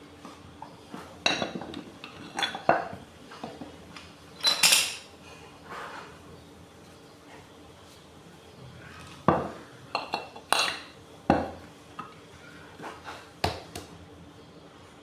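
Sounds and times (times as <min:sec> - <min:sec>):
metal tools clanking: 0:04.4 - 0:05.1.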